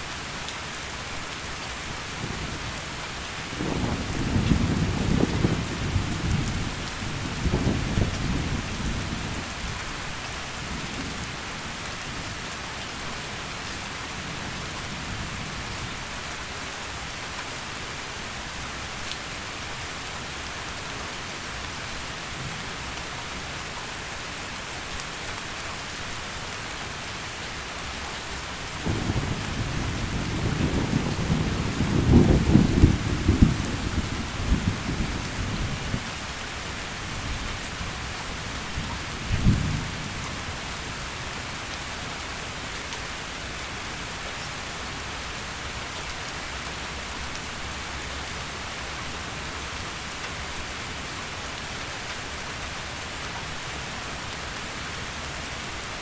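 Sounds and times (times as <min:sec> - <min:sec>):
heavy rain falling: 0:00.0 - 0:56.0
low rolling thunder: 0:03.5 - 0:09.5, 0:28.8 - 0:36.1, 0:38.8 - 0:40.2.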